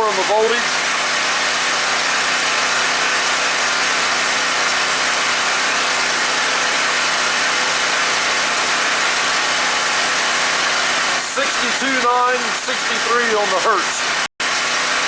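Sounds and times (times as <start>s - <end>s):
generator engine running: 0.0s - 15.0s.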